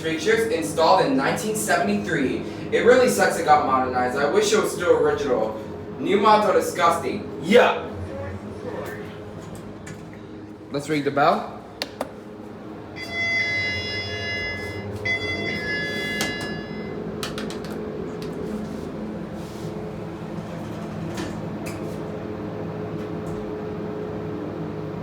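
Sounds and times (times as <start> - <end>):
steady hum: 0.0 - 25.0
elevator chime: 12.8 - 17.2
elevator doors sliding open: 12.8 - 24.3.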